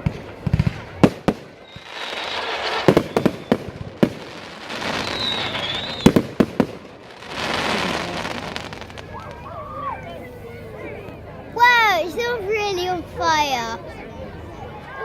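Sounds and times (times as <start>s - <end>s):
fireworks bangs: 0.0s - 9.5s
high firework whistle: 1.5s - 6.4s.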